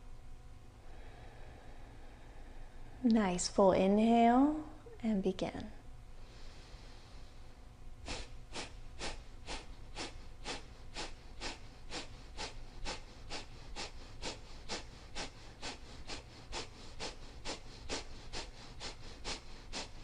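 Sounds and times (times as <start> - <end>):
forceful exhales through nose: 8.0 - 20.0.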